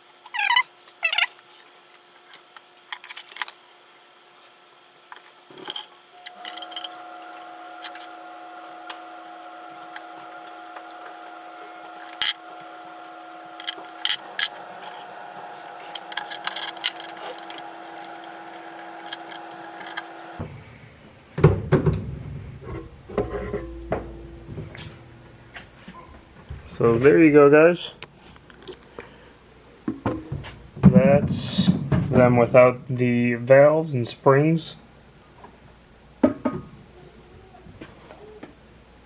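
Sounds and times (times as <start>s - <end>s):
steady hum: 5.1s - 20.4s, 23.3s - 25.9s
knocks and handling noise: 5.2s - 20.4s
metallic clicks of hand tools: 12.0s - 12.7s, 13.6s - 15.1s.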